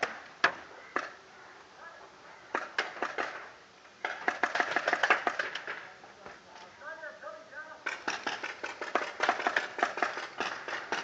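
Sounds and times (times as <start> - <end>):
paintball markers firing: 2.5 - 5.9, 7.8 - 11.0.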